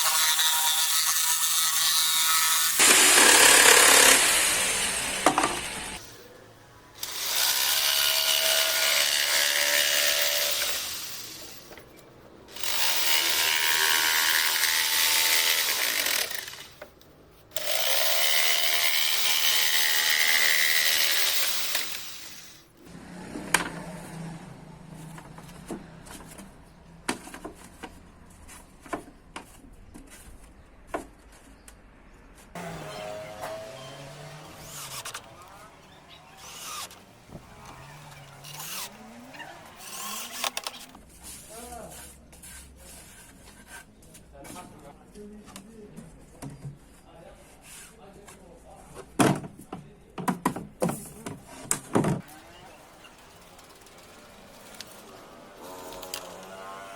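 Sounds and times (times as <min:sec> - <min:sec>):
power tool cutting wood: 0:00.0 - 0:06.1, 0:07.0 - 0:11.6, 0:12.5 - 0:16.8, 0:17.6 - 0:24.5, 0:32.6 - 0:40.9, 0:52.2 - 0:56.9.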